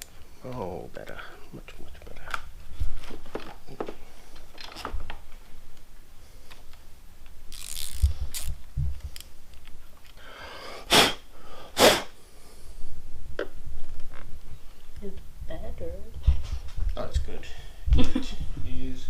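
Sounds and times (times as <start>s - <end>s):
air nozzle hissing blasts: 10.7s - 12.2s.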